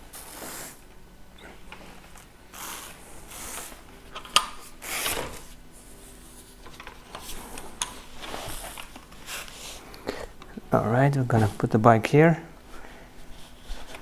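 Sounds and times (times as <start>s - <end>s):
packaging rustling and scraping: 4.6s - 9.9s, 13.2s - 14.0s.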